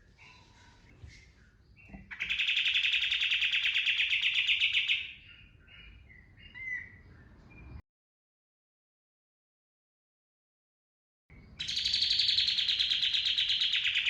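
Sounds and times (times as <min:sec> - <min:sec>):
songbird chirps and trill: 0:00.0 - 0:07.8, 0:11.3 - 0:14.0.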